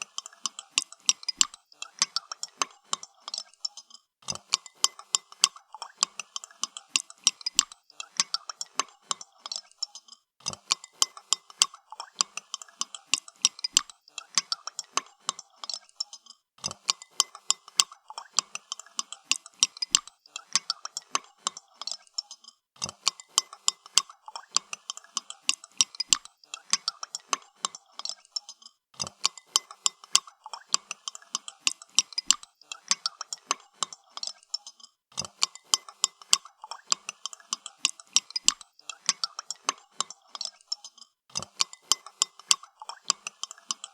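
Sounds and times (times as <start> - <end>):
spoon clinking in cup: 35.2 - 43.9.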